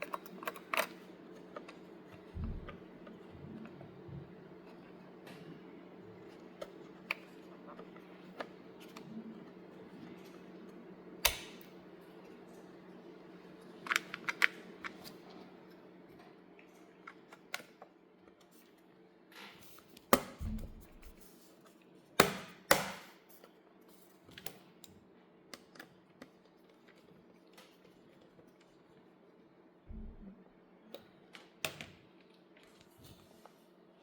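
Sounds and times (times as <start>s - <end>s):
tools clicking on laptop parts: 0.0s - 1.8s
steady low hum: 0.0s - 17.2s, 29.1s - 31.2s.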